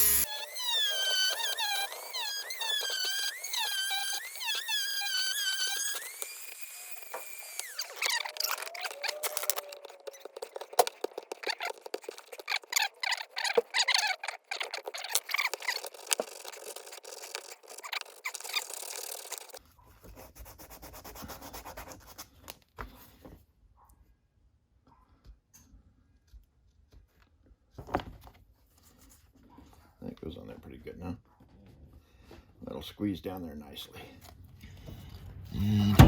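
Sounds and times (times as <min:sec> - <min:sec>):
plastic fittings squeaking: 0:00.0 - 0:19.6
handling noise: 0:07.8 - 0:19.6.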